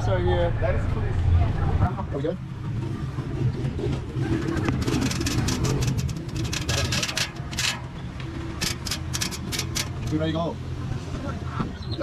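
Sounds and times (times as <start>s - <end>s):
quick sharp clicks and rattles: 4.3s - 7.9s, 8.6s - 10.3s.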